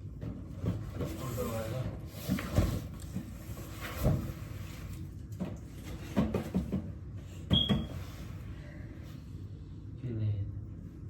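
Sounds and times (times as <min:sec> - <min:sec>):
objects knocking and clattering: 0:05.2 - 0:07.9.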